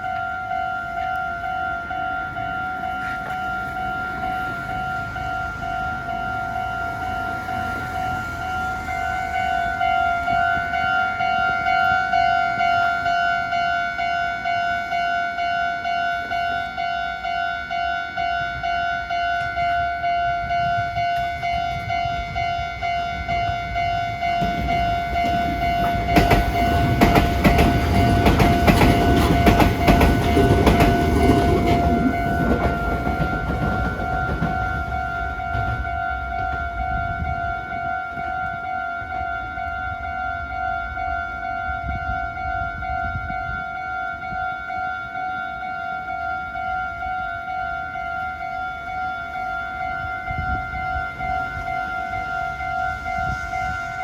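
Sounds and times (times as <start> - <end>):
electric train passing: 0.0 - 54.0
wheels clattering over rail joints: 24.2 - 36.9.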